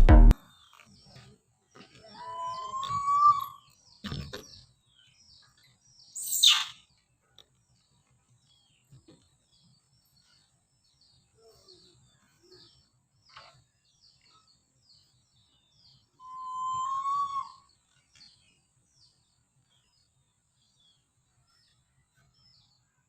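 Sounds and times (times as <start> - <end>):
loud shrill call: 2.2 - 3.6, 16.2 - 17.7
whistle-like call: 2.2 - 3.6, 16.2 - 17.7
high chirping calls: 6.0 - 6.9.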